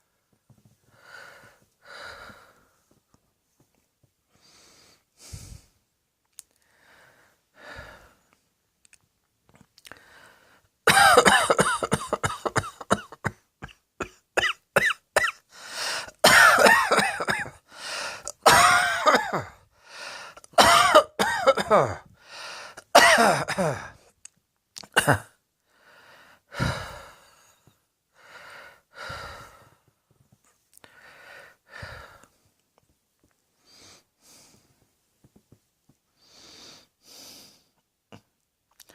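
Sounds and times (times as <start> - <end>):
faint breaths: 0.0 - 3.2, 4.3 - 5.9, 6.5 - 8.4, 9.9 - 10.8, 15.5 - 16.2, 17.6 - 18.4, 19.7 - 20.5, 22.0 - 22.9, 25.6 - 32.6, 33.5 - 35.0, 36.1 - 37.8
person coughing: 10.9 - 15.4, 16.0 - 17.6, 18.2 - 19.6, 20.4 - 22.0, 22.8 - 24.0, 24.8 - 25.4.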